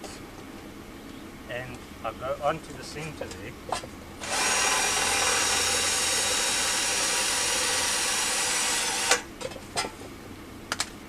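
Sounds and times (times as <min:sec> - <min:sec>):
electric drill drilling into metal: 0:04.2 - 0:09.3.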